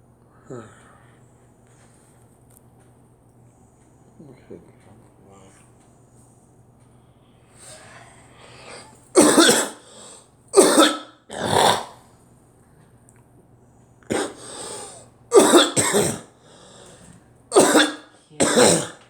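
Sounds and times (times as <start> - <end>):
person coughing: 9.2 - 9.8, 10.6 - 12.0, 14.1 - 16.3, 17.5 - 19.0.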